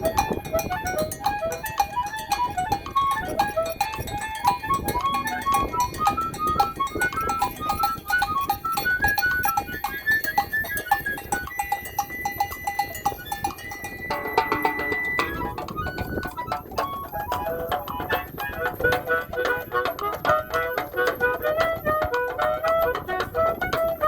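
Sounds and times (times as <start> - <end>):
hand drums and percussion: 0.0 - 24.0
high running melody: 0.0 - 24.0
steady high tone: 11.5 - 24.0.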